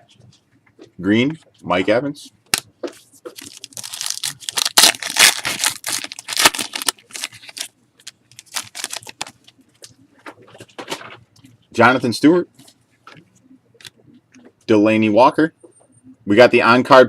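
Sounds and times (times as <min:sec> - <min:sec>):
cards and packaging rustling: 0:02.5 - 0:11.2.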